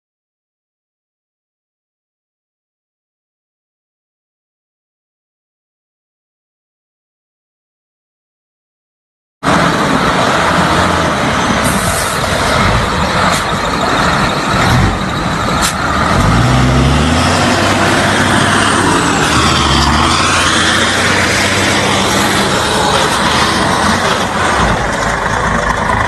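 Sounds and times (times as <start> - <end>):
truck diesel engine running: 9.4 - 26.0
short air hisses: 11.6 - 12.2.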